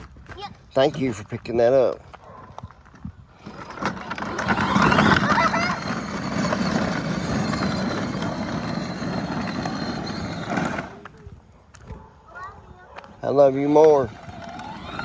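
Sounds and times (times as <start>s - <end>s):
small utility vehicle running: 2.6s - 11.9s, 13.1s - 15.0s.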